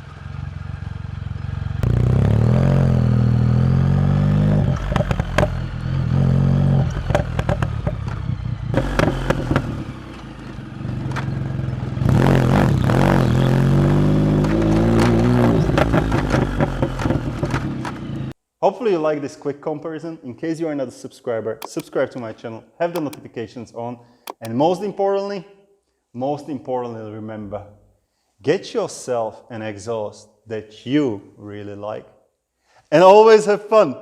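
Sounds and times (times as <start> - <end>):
motorcycle engine revving: 0.0 - 18.4
exhaust pops and crackles: 4.5 - 5.8, 6.8 - 10.0, 13.1 - 18.4.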